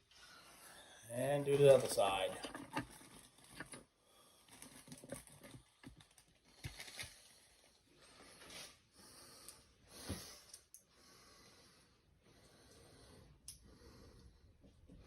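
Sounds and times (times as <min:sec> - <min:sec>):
person breathing: 0:00.1 - 0:01.1, 0:04.0 - 0:04.7, 0:06.5 - 0:14.7.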